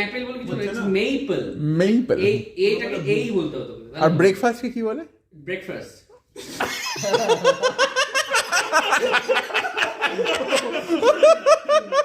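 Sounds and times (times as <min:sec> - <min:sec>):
group of people laughing: 0:06.4 - 0:12.0.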